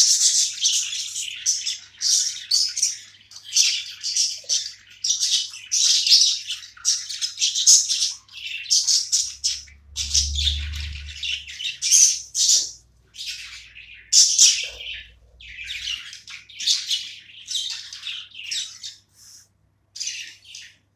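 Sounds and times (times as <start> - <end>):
budgies chirping and squawking: 0.0 - 20.9.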